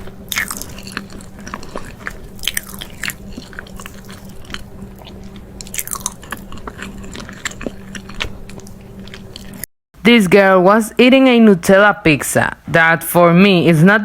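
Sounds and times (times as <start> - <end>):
person chewing food: 0.0 - 9.7
low hum: 0.0 - 10.7.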